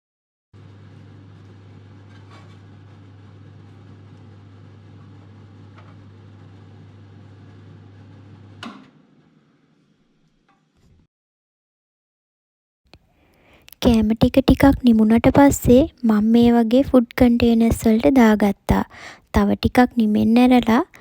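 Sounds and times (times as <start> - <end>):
appliance electrical hum: 0.6 - 10.4.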